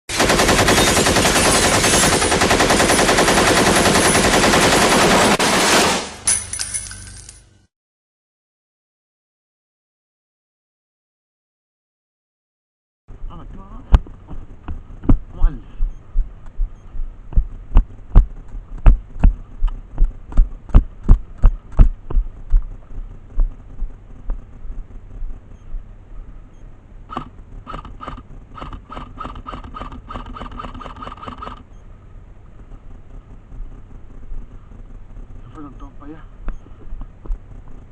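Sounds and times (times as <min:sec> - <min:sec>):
rapid automatic gunfire: 0:00.1 - 0:06.2
light metallic clinks: 0:06.3 - 0:07.6.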